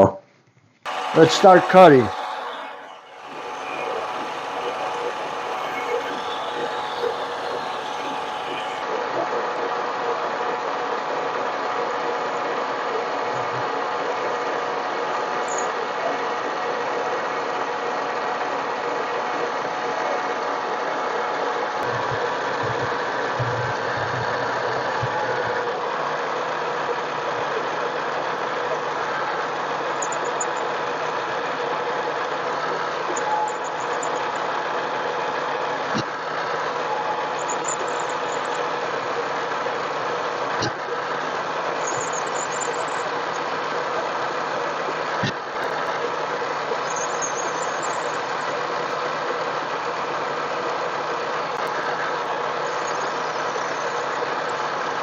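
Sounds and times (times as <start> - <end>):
lathe motor whine and hum: 2.4 - 8.9.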